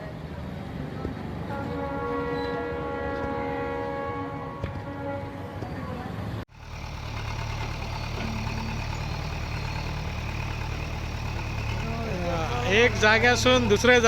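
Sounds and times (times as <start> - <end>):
diesel engine running: 6.5 - 14.0.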